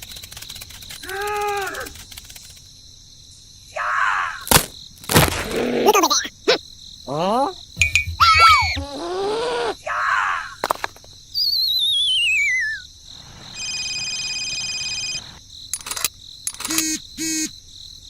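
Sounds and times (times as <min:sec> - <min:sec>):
quick clicks: 0:00.0 - 0:02.7, 0:15.7 - 0:17.3
short chirps: 0:07.8 - 0:08.9, 0:11.4 - 0:12.9
wavering whistle falling in pitch: 0:07.8 - 0:08.9, 0:11.4 - 0:12.8.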